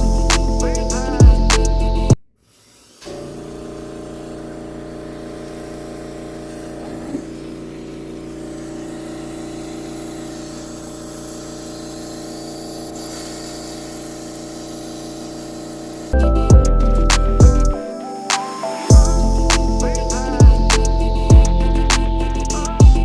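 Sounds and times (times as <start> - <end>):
small pump motor humming: 0.0 - 16.1.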